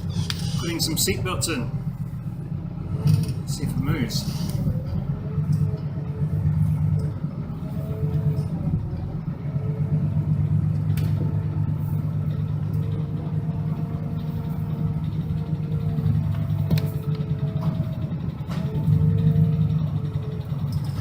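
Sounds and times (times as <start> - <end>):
bus engine droning: 0.0 - 21.0.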